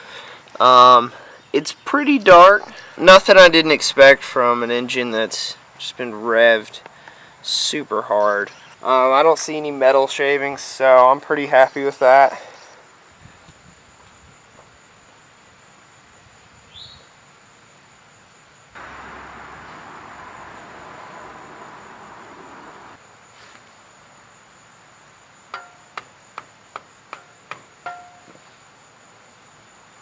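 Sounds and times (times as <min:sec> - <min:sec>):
faint high whine: 0:12.6 - 0:30.0.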